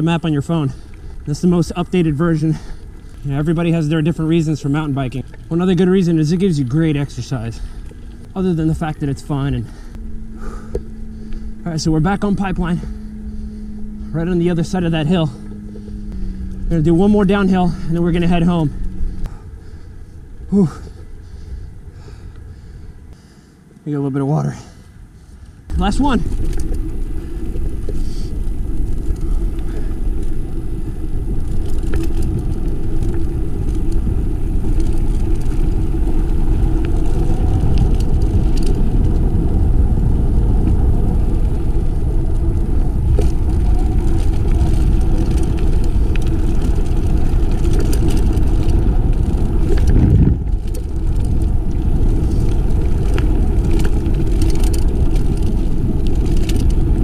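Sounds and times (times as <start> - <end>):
bike tyres rolling over rocks: 0.0 - 22.7, 25.7 - 57.0
bike clicks and rattles: 0.0 - 22.9, 25.5 - 57.0
wind rumbling on microphone: 24.9 - 57.0.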